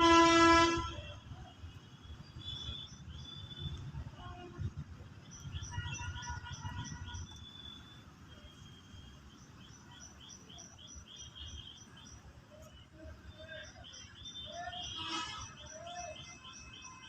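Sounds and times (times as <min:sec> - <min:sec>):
birds chirping: 0:05.1 - 0:17.0.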